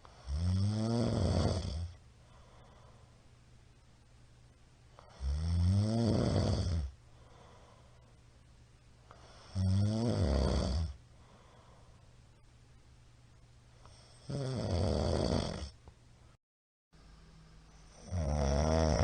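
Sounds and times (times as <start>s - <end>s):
man snoring loudly: 0.1s - 2.0s, 5.1s - 6.9s, 9.3s - 11.0s, 14.0s - 15.8s, 17.9s - 19.0s.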